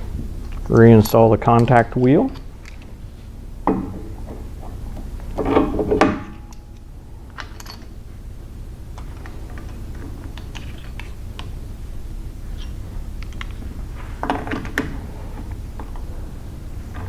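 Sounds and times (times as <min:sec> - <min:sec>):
metal parts clanking: 0:07.4 - 0:07.9.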